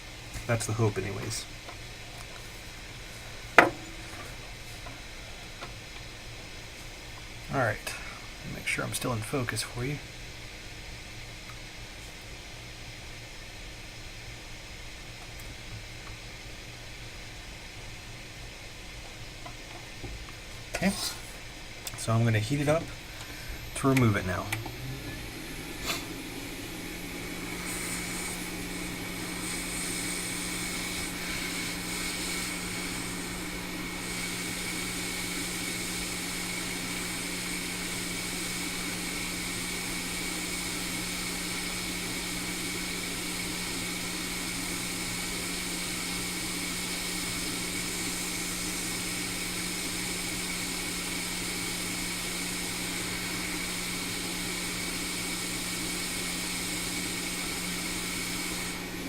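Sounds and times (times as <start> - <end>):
hot air blower hissing: 0.0 - 10.2, 20.0 - 59.0
low hum: 22.1 - 34.2.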